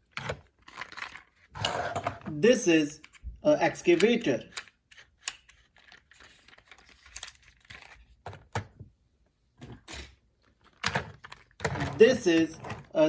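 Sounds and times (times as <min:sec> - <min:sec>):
clicks and taps of toy parts: 0:03.8 - 0:07.5.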